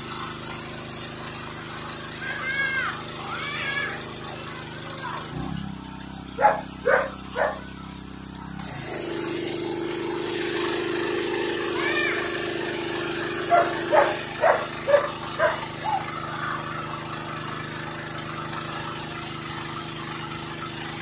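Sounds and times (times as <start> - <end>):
pressure washer running: 0.0 - 21.0
dog barking: 6.4 - 7.7, 13.5 - 16.0.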